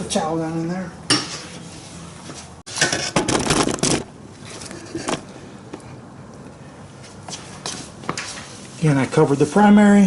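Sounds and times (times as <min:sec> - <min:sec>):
handling noise: 0:02.2 - 0:05.9.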